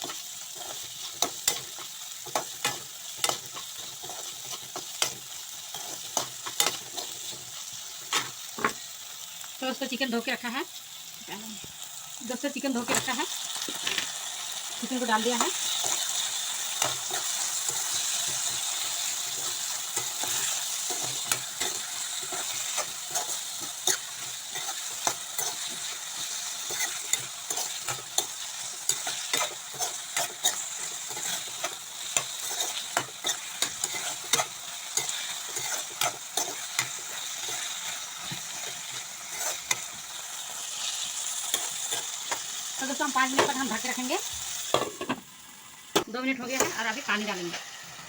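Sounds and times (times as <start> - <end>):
chicken sizzling in hot oil: 0.0 - 48.0
utensil scraping pan: 15.1 - 40.0.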